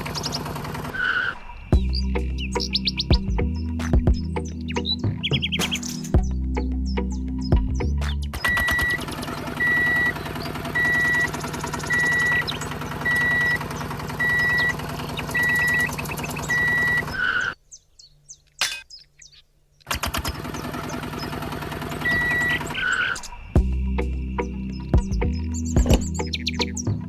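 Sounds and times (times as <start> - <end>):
small electric motor clattering: 0.0 - 1.6, 8.6 - 17.2
birds chirping: 0.0 - 23.6, 24.6 - 27.0.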